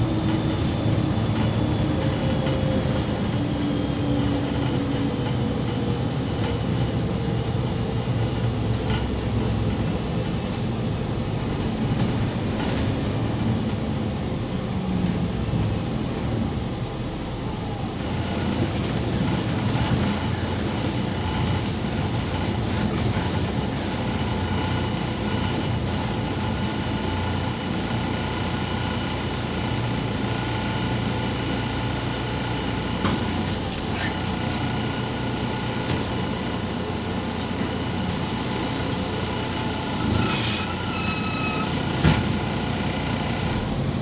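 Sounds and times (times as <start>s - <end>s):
bus engine and road rumble: 0.0s - 44.0s
short high squeal: 33.8s - 36.3s, 39.6s - 42.2s.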